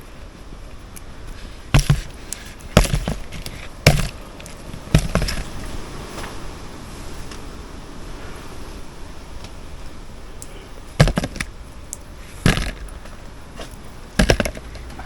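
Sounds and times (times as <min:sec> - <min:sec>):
sharp knocks: 0:01.7 - 0:04.2, 0:04.8 - 0:05.6, 0:11.0 - 0:11.5, 0:12.4 - 0:12.9, 0:14.2 - 0:14.8.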